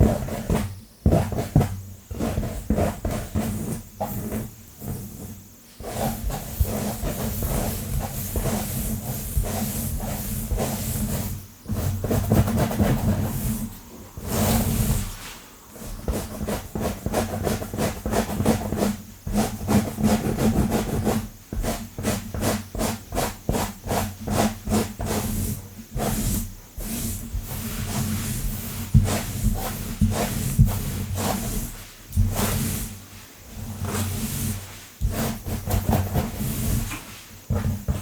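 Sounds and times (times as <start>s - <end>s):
fingernails scratching through hair: 2.2s - 18.8s.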